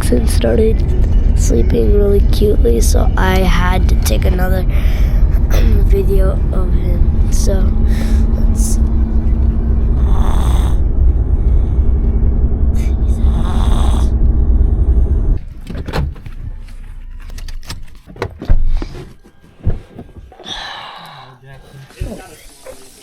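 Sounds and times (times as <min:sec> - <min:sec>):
car cabin rumble: 0:00.0 - 0:20.3
child breathing heavily: 0:04.4 - 0:05.9, 0:07.5 - 0:08.7, 0:10.0 - 0:10.8, 0:12.8 - 0:14.2, 0:20.2 - 0:22.0.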